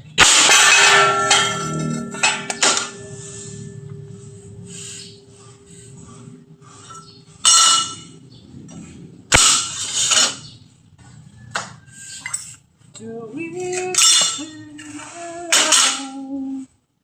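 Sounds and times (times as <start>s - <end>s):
metal clinking and clanking: 0.0s - 4.3s, 6.6s - 10.6s, 13.5s - 16.2s.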